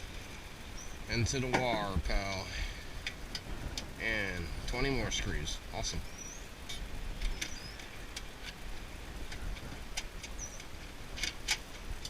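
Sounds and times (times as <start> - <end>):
high bird chirps: 7.3 - 7.9.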